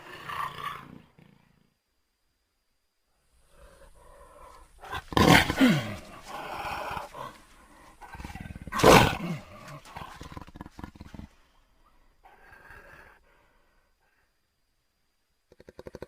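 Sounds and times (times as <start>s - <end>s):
jaguar roaring: 3.5s - 11.3s
jaguar grunting: 3.5s - 11.4s.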